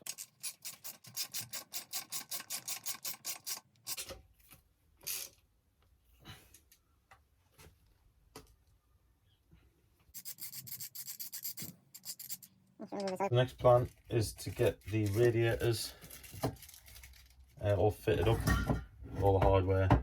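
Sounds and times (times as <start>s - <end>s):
ratchet clicking fast: 0.0s - 4.0s, 10.2s - 12.5s.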